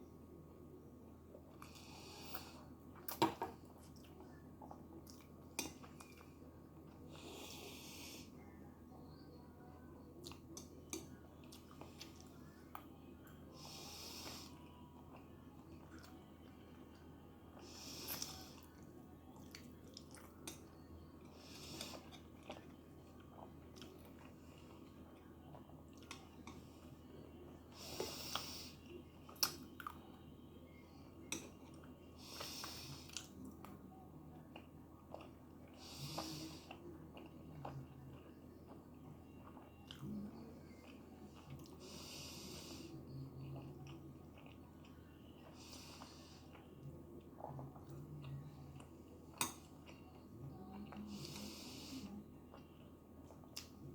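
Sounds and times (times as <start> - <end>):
close-miked chewing: 1.4 - 7.5, 10.1 - 53.9
soft hissing breath: 1.6 - 2.8, 7.0 - 8.6, 13.5 - 14.7, 17.5 - 18.7, 21.3 - 22.3, 26.6 - 29.0, 32.1 - 33.2, 35.7 - 36.9, 41.6 - 43.2, 45.5 - 46.7, 51.0 - 52.3.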